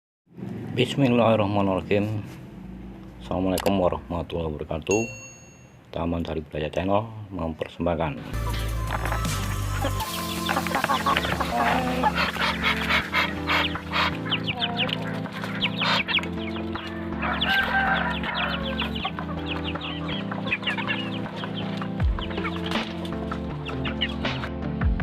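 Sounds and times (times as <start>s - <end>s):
chickens clucking: 7.6s - 24.5s.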